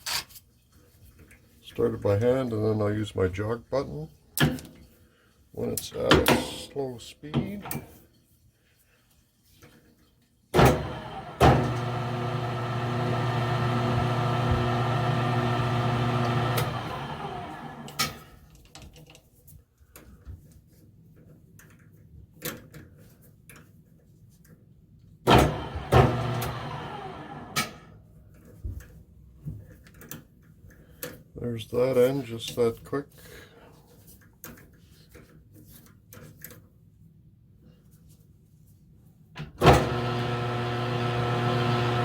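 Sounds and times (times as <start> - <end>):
lathe motor running: 10.6 - 18.0, 25.3 - 27.8, 39.7 - 42.0.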